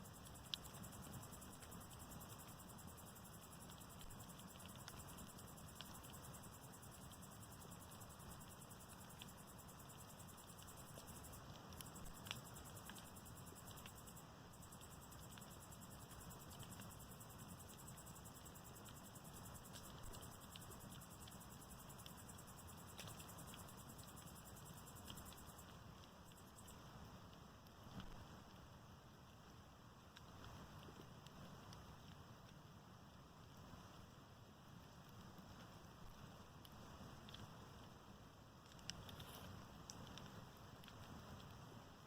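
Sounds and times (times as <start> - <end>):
bonfire hissing: 0.1 - 29.6, 33.4 - 42.0
fire pops: 38.7 - 41.6.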